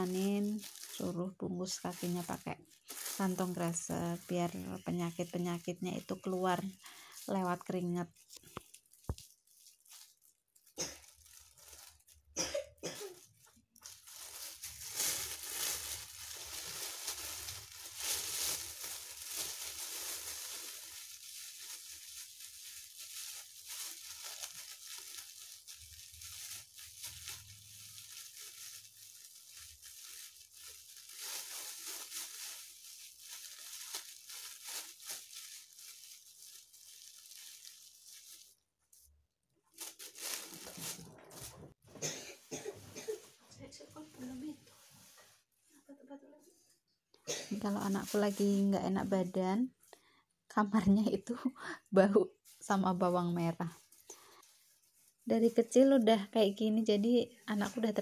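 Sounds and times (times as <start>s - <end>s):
plastic bags rustling: 0.0s - 43.4s, 44.2s - 45.5s, 47.3s - 49.7s, 52.0s - 58.0s
child coughing: 12.4s - 13.3s, 42.0s - 43.3s, 47.2s - 47.6s.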